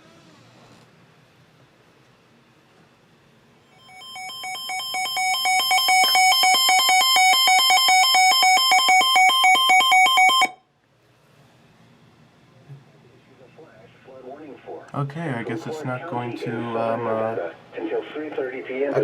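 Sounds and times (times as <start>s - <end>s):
trilling electronic alarm beeps: 3.8s - 10.6s.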